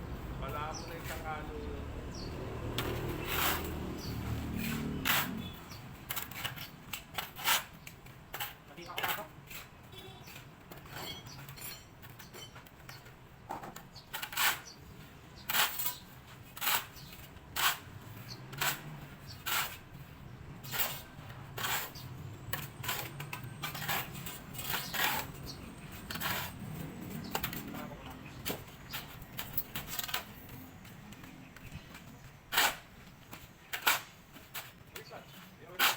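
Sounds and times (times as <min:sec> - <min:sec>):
metal tool scraping concrete: 0:00.6 - 0:12.4, 0:14.0 - 0:14.8, 0:15.4 - 0:19.9, 0:20.6 - 0:30.4, 0:31.6 - 0:35.9.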